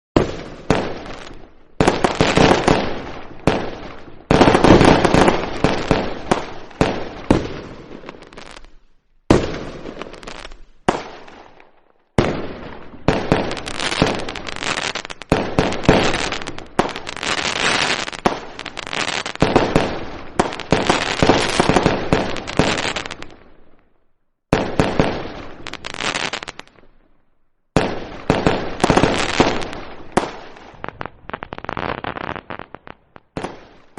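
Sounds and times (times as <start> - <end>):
firecrackers bursting: 0.2 - 23.6, 24.5 - 26.8, 27.8 - 33.9.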